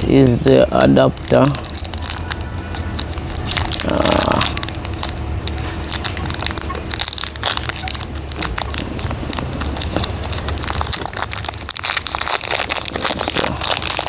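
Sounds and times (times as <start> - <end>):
plastic packaging crinkling: 0.0 - 14.0.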